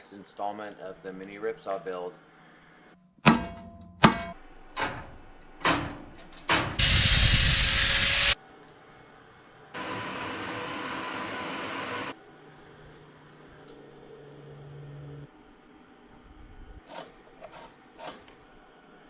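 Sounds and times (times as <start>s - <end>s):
sharp ringing knocks: 3.2s - 4.4s
loud hiss: 6.6s - 8.4s.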